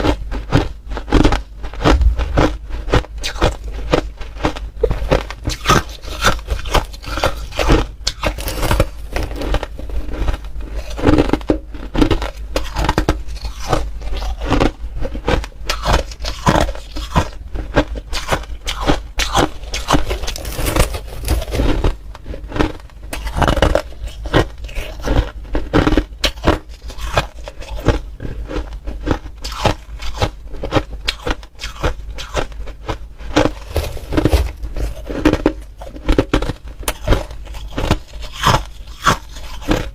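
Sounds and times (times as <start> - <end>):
person chewing crunchy ice: 0.0 - 39.9.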